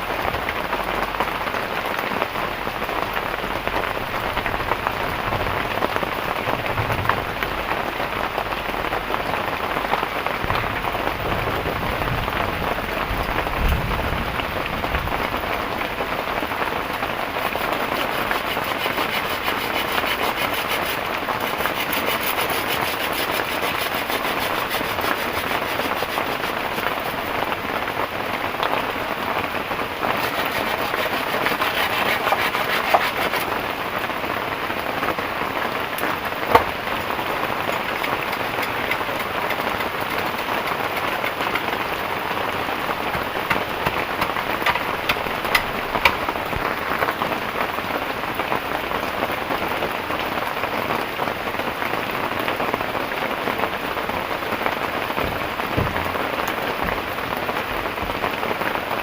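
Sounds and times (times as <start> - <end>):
heavy rain pouring: 0.0 - 59.0
sharp knocks: 36.5 - 36.8, 43.1 - 46.4, 55.1 - 57.2.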